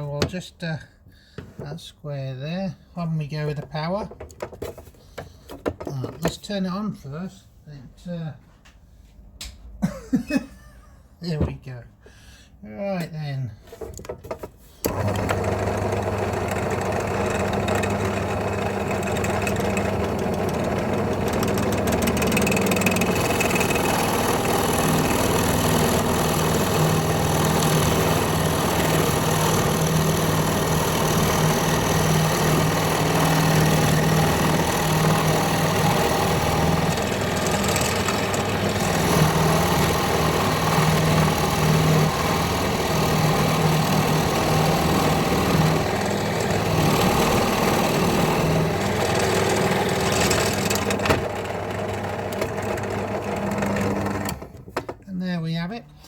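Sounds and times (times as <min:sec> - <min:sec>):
power drill boring through wood: 0:14.8 - 0:54.7.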